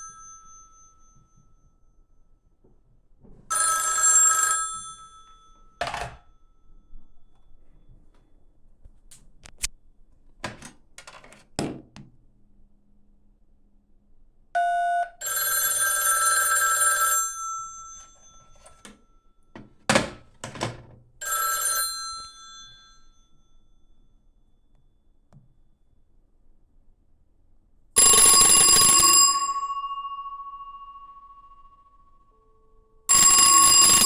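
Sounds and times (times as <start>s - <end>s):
telephone bell ringing: 0.0s - 1.7s, 3.5s - 7.0s, 14.6s - 19.5s, 21.2s - 23.9s, 28.0s - 34.0s.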